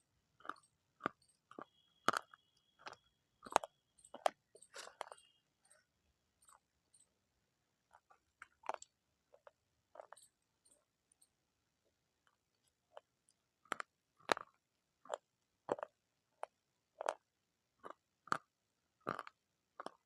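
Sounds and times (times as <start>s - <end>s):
person chewing crunchy food: 0.4s - 5.8s, 7.9s - 10.8s, 13.0s - 20.0s.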